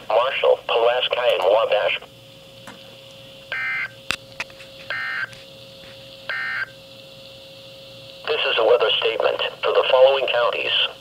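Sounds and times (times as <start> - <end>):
faint steady hum: 0.0 - 11.0
warbling digital data tones: 3.5 - 4.0, 4.8 - 5.4, 6.1 - 6.9.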